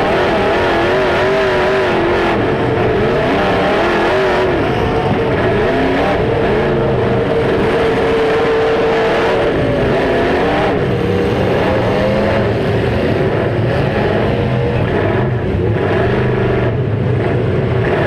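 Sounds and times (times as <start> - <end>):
car engines revving: 0.0 - 18.0.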